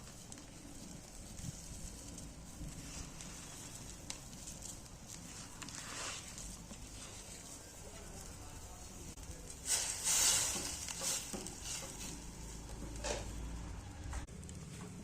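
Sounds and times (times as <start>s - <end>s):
food sizzling in hot oil: 8.7s - 13.6s.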